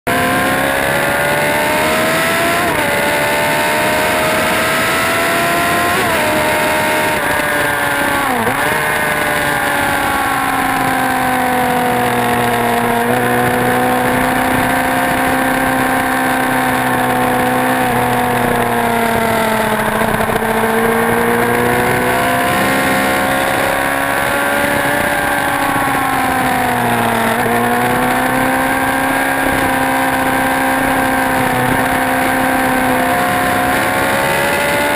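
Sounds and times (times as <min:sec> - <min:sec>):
motorcycle engine revving: 0:00.0 - 0:34.9.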